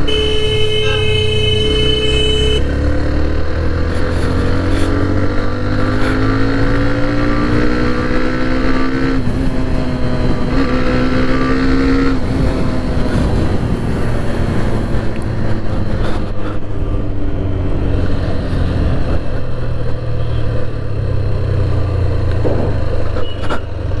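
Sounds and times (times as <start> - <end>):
motorcycle engine running: 0.0 - 7.1.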